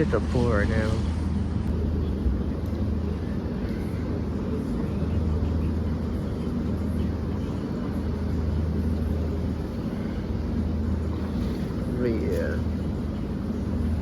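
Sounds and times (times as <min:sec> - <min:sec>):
low hum: 0:00.0 - 0:14.0
low rumbling: 0:00.0 - 0:14.0.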